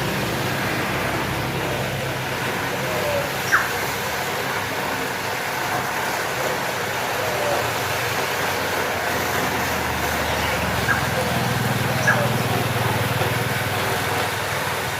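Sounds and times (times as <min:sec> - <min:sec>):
carpet-washing machine motor humming: 0:00.0 - 0:14.9
constant hiss: 0:00.0 - 0:14.9.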